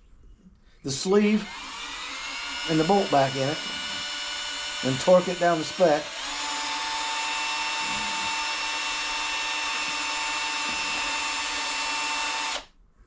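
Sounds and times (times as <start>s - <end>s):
drill running at slow speed: 1.3s - 12.7s.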